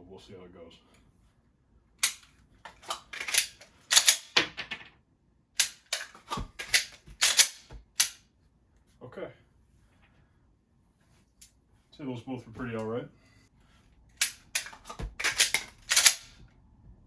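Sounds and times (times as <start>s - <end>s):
pistol clicks and clacks: 2.0s - 4.4s, 5.6s - 8.2s, 14.2s - 16.4s.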